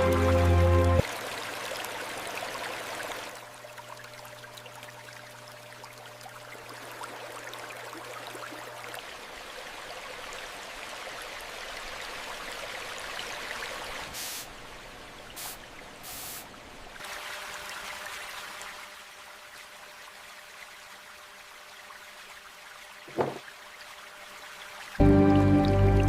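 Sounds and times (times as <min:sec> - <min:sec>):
water running steadily: 0:00.0 - 0:26.0
short bursts of hiss: 0:14.2 - 0:14.5, 0:15.4 - 0:16.5.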